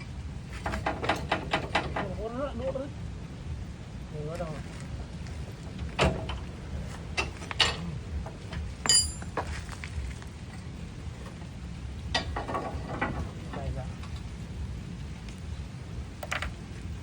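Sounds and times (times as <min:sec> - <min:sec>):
metal tools clinking: 0:08.8 - 0:09.8.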